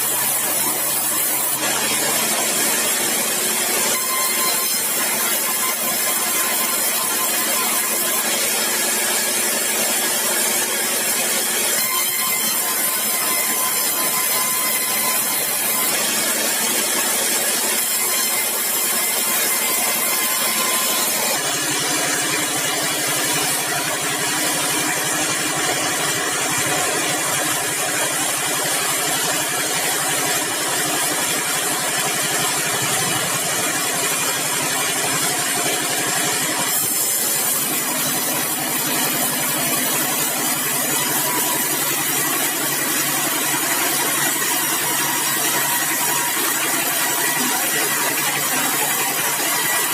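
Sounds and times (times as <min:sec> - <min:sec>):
sawmill machinery humming: 0:00.0 - 0:49.9.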